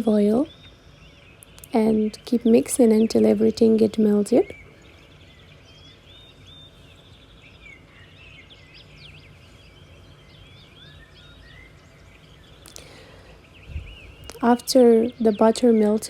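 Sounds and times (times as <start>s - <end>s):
birds chirping and whistling: 0.0s - 16.0s
low hum: 8.9s - 15.9s.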